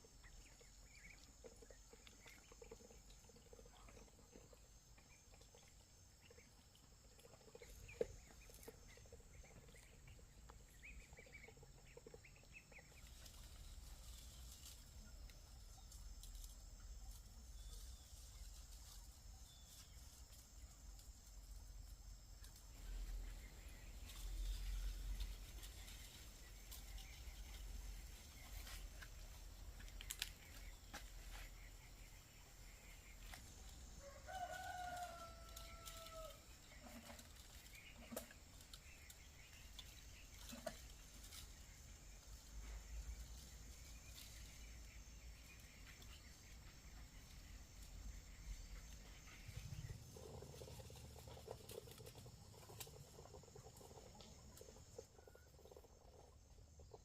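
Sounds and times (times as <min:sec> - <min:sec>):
faint animal call: 0:34.0 - 0:37.3.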